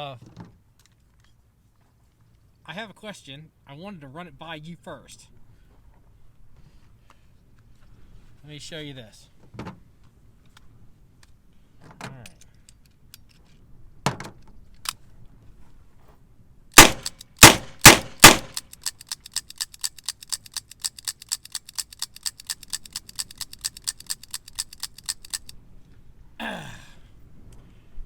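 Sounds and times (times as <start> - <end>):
fast faint ticks: 18.2 - 25.5.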